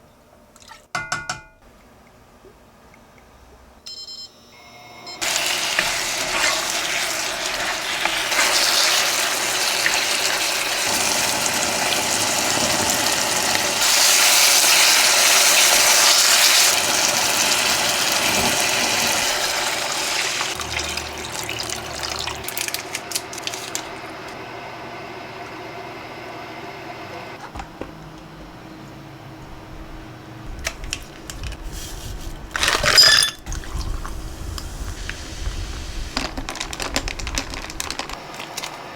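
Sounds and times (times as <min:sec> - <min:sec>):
water rushing and filling: 0:05.2 - 0:23.7, 0:31.6 - 0:38.6.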